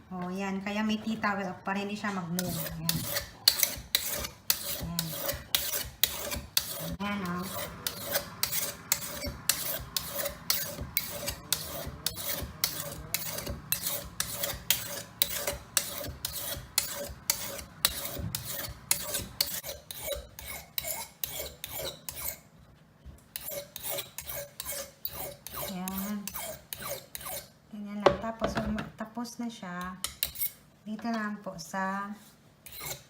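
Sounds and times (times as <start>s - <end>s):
knife rasping on sharpening stone: 2.4s - 22.4s, 23.4s - 27.5s, 30.0s - 30.6s, 32.6s - 33.0s.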